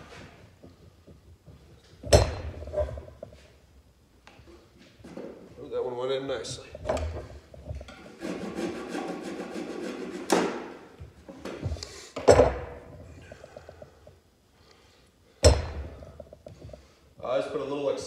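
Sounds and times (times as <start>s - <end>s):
wooden dowels knocked into wood: 11.4s - 12.9s, 15.4s - 16.0s.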